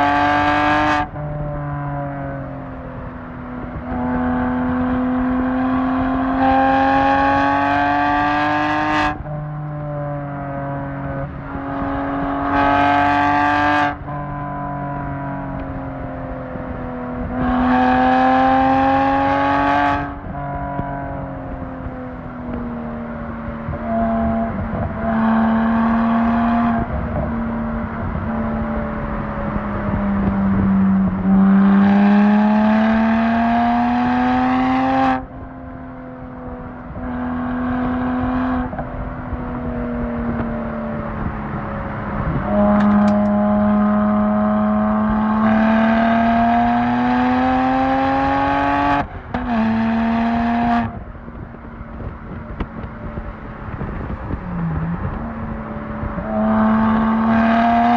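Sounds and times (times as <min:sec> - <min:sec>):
car engine revving hard: 0:03.7 - 0:09.8, 0:11.0 - 0:14.1, 0:17.3 - 0:20.4, 0:23.6 - 0:27.2, 0:28.0 - 0:35.2, 0:42.2 - 0:51.0, 0:53.6 - 0:57.9.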